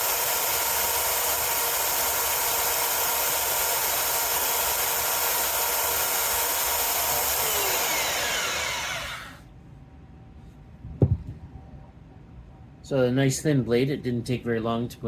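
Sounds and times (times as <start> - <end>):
belt sharpener whine: 0.0 - 9.4.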